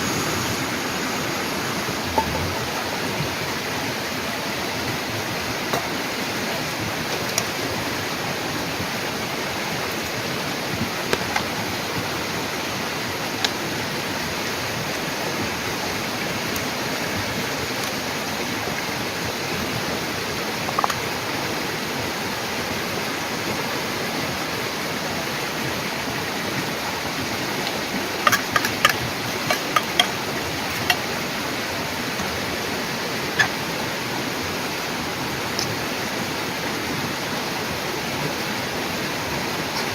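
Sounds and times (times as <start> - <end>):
steady rushing noise: 0.0 - 5.8.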